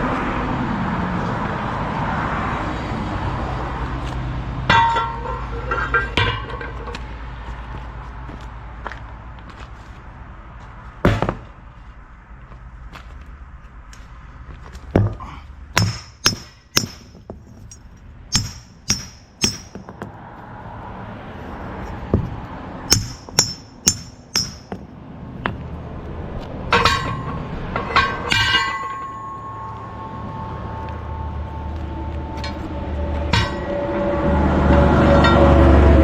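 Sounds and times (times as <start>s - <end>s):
steel part ringing: 4.7s - 7.0s, 22.9s - 24.8s, 26.7s - 31.7s, 32.4s - 34.3s, 35.0s - 35.7s
steel parts clinking together: 4.7s - 7.0s, 15.9s - 19.9s, 26.7s - 29.9s.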